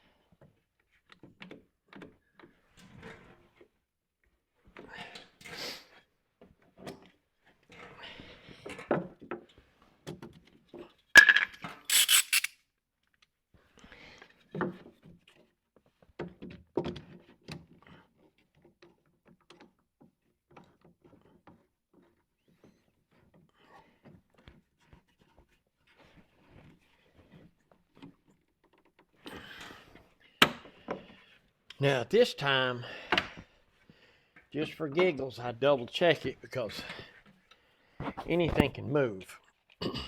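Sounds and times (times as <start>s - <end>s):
wooden parts and tools clattering: 11.2s - 12.5s.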